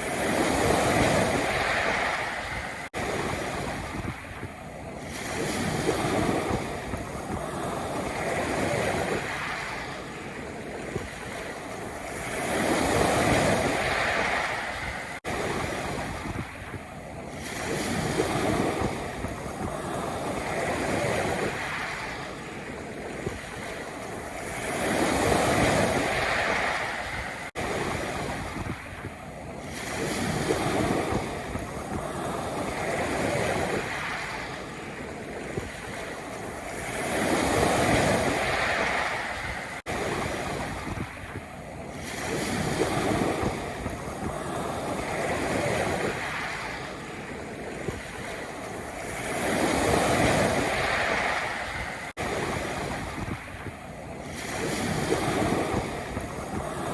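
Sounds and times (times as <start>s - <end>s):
sea waves breaking on pebbles: 0.0s - 4.3s.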